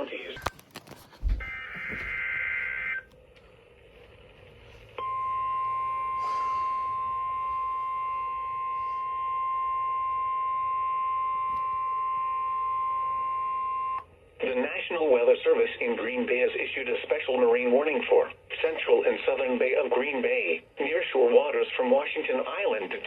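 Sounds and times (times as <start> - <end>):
faint radio hiss: 0.0 - 5.0, 14.2 - 23.0
steady alarm beep: 1.3 - 3.0, 5.0 - 14.0.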